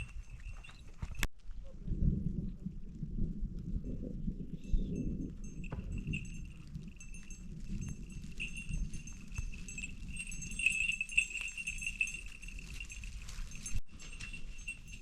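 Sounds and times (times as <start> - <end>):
livestock bells jingling: 0.0 - 1.3, 4.6 - 15.0.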